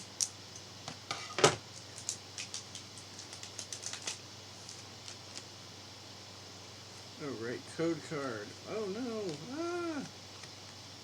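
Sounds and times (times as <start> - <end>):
foil wrapper crinkling: 1.8 - 5.4.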